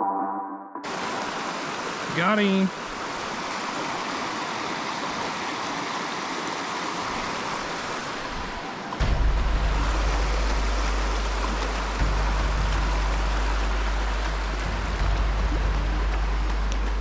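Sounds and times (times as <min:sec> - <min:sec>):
stream water rushing: 0:00.8 - 0:17.0
heavy low rumble: 0:09.0 - 0:17.0.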